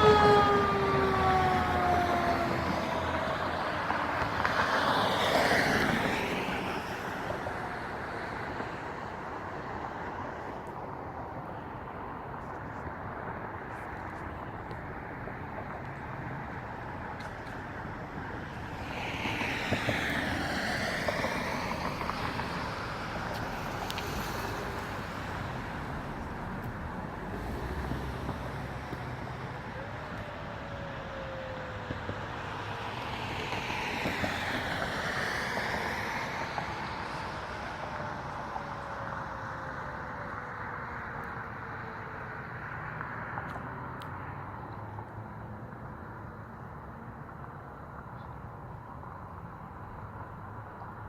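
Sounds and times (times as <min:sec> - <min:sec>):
vehicles driving past: 0:00.0 - 0:51.0.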